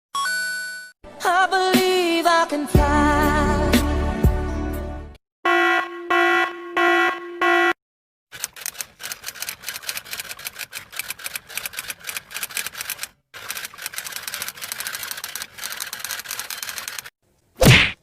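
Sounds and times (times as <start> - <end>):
typewriter keys clacking: 8.4 - 17.1.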